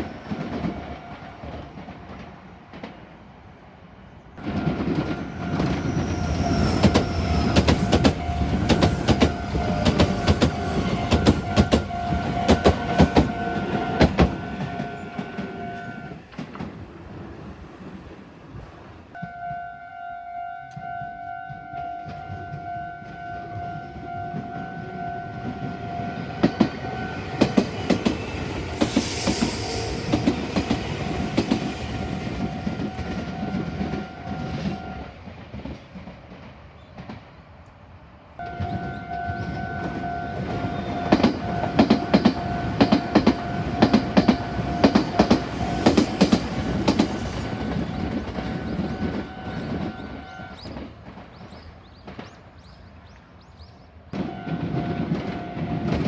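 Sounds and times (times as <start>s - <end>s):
train wheels clattering: 4.4s - 16.9s, 25.4s - 34.8s, 38.6s - 53.2s.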